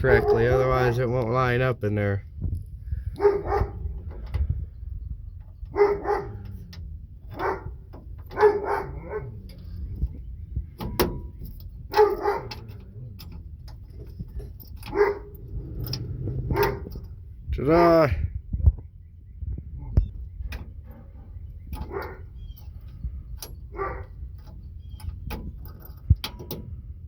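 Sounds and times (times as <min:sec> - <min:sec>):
dog barking: 0:00.1 - 0:00.5, 0:03.2 - 0:03.8, 0:05.7 - 0:06.5, 0:07.3 - 0:09.5, 0:11.9 - 0:12.6, 0:14.9 - 0:15.3, 0:16.5 - 0:16.9, 0:21.8 - 0:22.3, 0:23.7 - 0:24.1.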